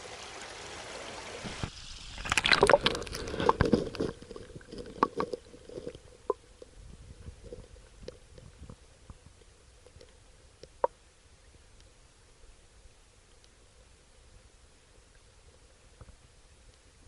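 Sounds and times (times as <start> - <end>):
water sloshing and splashing: 0.0 - 8.8.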